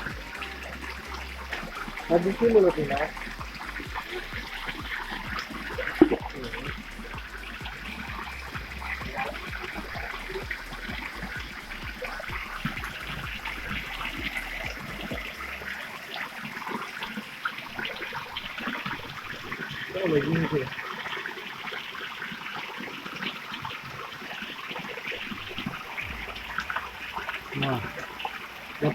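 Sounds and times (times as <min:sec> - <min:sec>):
stream water trickling over rocks: 0:00.0 - 0:28.9.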